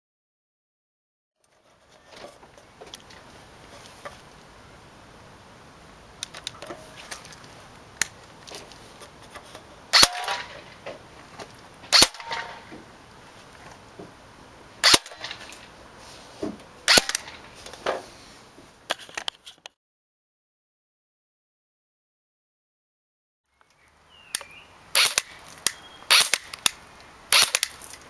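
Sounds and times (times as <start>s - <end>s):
airsoft gun shots: 9.9s - 10.7s, 11.9s - 12.7s, 14.8s - 15.4s, 16.9s - 17.4s, 25.0s - 25.4s, 26.1s - 26.5s, 27.3s - 27.8s.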